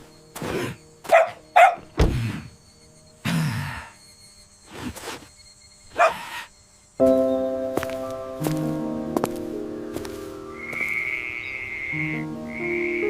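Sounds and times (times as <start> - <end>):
soft music with held notes: 7.0 - 13.0.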